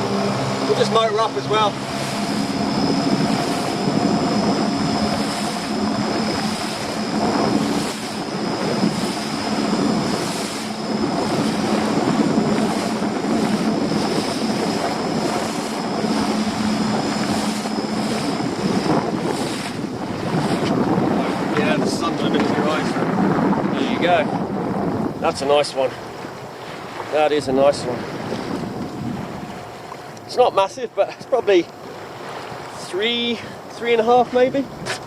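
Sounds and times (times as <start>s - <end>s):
wind noise: 0.0s - 30.0s
boat motor running: 0.0s - 35.0s
water noise: 0.0s - 35.0s.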